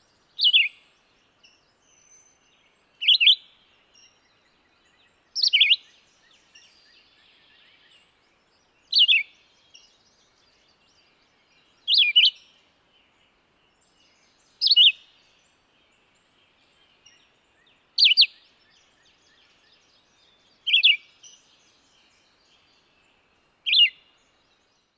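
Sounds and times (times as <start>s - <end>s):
bird singing whistled phrases: 18.0s - 18.4s, 20.7s - 21.0s, 23.7s - 24.0s.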